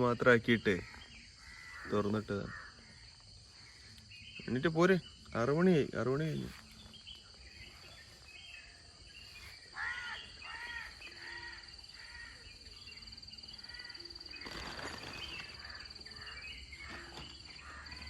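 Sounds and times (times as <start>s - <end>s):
crickets trilling: 0.0s - 18.0s
faint birds calling: 0.0s - 18.0s
crow cawing: 0.8s - 4.0s, 9.7s - 12.5s, 15.6s - 18.0s.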